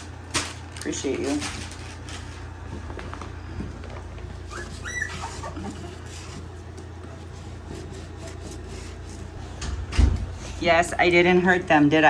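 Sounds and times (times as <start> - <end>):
steady low hum: 0.0 - 12.0
puppies squeaking and whimpering: 4.3 - 6.4.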